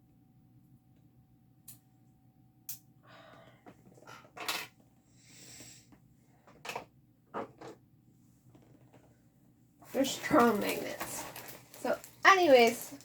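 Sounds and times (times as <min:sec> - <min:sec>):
packaging rustling: 0:09.9 - 0:13.0.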